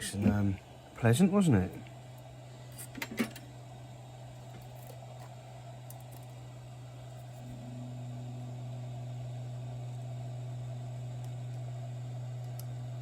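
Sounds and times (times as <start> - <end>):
higher electrical hum: 0.0 - 13.0
low electrical hum: 0.0 - 13.0
click: 12.4 - 12.7.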